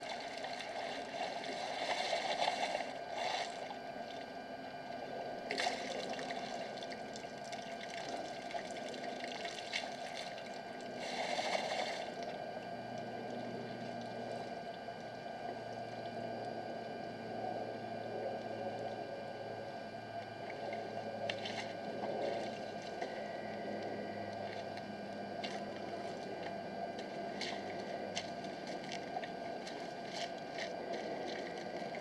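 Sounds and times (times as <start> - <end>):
water splashing and gushing: 0.0 - 3.6
steady background hum: 0.0 - 32.0.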